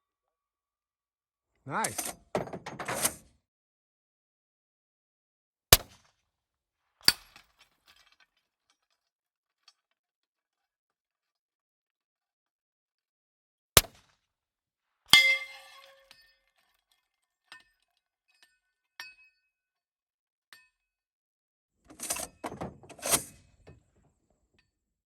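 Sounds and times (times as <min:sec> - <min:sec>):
bullet clanging on steel target: 0:15.1 - 0:16.4
faint clinks: 0:15.2 - 0:16.3.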